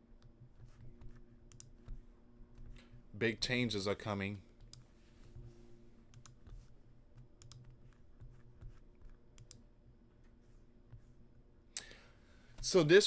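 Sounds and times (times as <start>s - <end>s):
low steady hum: 0.0s - 13.0s
faint computer clicks: 6.1s - 6.4s, 7.4s - 7.7s, 9.4s - 9.6s.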